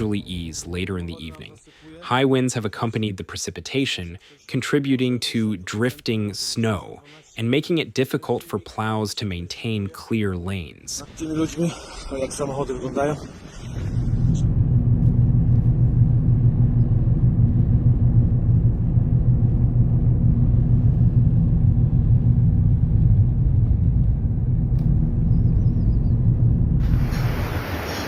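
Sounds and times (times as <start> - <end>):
vehicle engine rumbling: 11.1 - 28.0
loud rushing hiss: 26.8 - 28.0.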